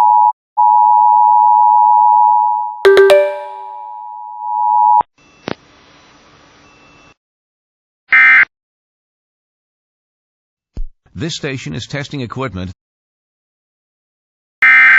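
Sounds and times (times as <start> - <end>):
two-tone alert tone: 2.9 - 3.7.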